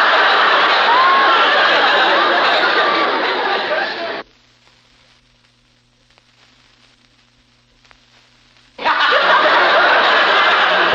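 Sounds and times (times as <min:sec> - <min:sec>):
studio audience laughter: 0:00.0 - 0:04.2, 0:08.8 - 0:10.9
low steady hum: 0:00.0 - 0:10.8
faint hiss: 0:04.0 - 0:09.0.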